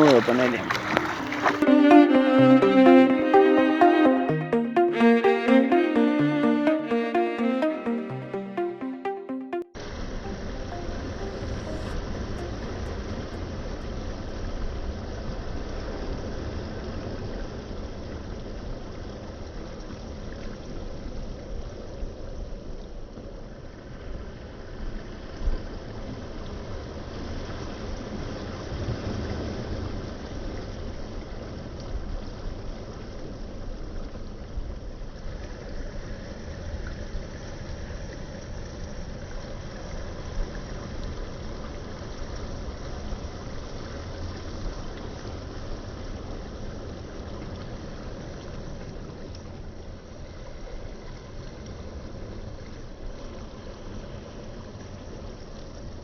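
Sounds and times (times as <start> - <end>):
water rushing along hull: 0.0 - 2.4.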